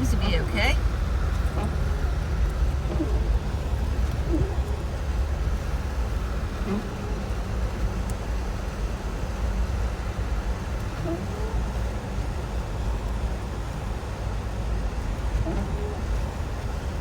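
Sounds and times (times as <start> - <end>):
car engine and road noise: 0.0 - 17.0.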